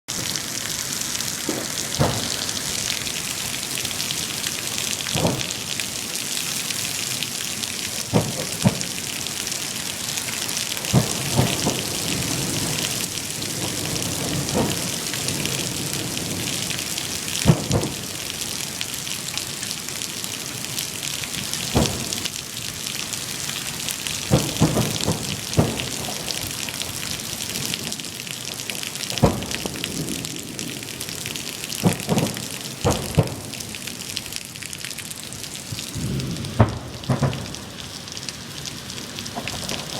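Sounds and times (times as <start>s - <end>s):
fireworks booming: 0.1s - 6.8s, 7.7s - 10.0s, 10.7s - 18.3s, 21.4s - 22.3s, 24.2s - 27.9s, 28.7s - 33.9s, 35.6s - 38.0s, 39.3s - 39.9s
heavy rain pouring: 0.1s - 39.9s.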